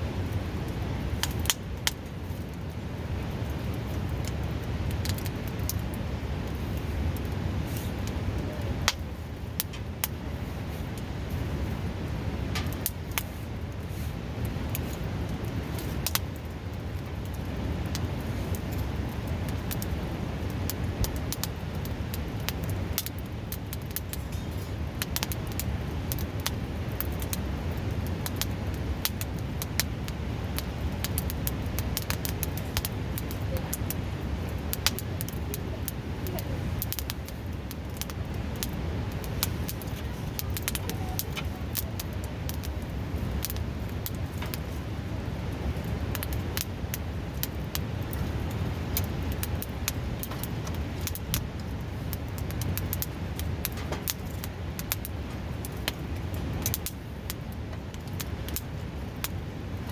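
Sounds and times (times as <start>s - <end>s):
wood fire crackling: 0.0s - 59.9s.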